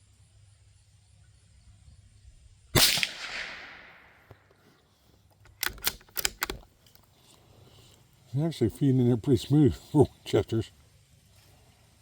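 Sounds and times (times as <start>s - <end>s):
rifle shot with echo: 2.8s - 4.4s
rifle bolt clicks: 5.4s - 7.0s.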